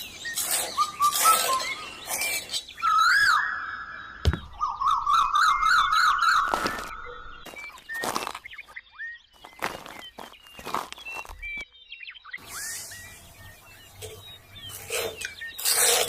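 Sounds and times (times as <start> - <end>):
whistly glides: 0.2 - 6.9.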